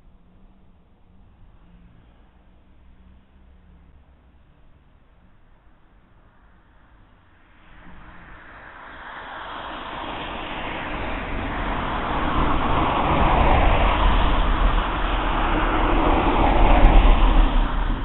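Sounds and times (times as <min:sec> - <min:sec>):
vehicle approaching: 0:00.0 - 0:18.0.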